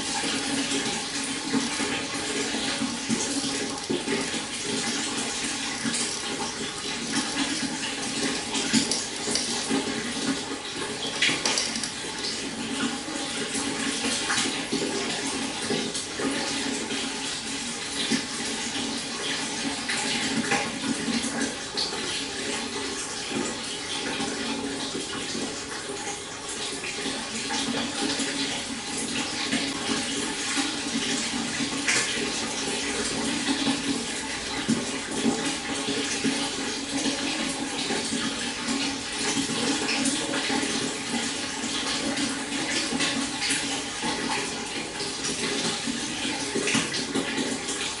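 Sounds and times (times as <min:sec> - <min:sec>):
stream water flowing: 0:00.0 - 0:16.7.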